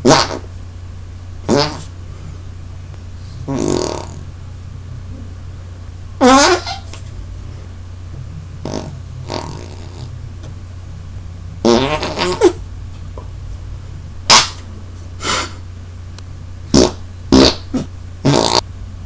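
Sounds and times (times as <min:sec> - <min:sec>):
armpit farts: 0:00.0 - 0:00.5, 0:01.4 - 0:01.9, 0:03.4 - 0:04.2, 0:06.2 - 0:07.4, 0:08.6 - 0:10.1, 0:11.6 - 0:12.7, 0:14.3 - 0:15.6, 0:16.7 - 0:18.7.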